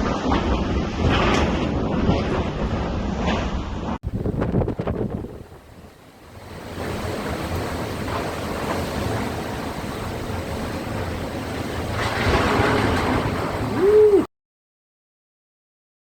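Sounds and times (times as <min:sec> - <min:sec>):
wind: 0:00.0 - 0:14.3
sea surf: 0:03.1 - 0:14.3.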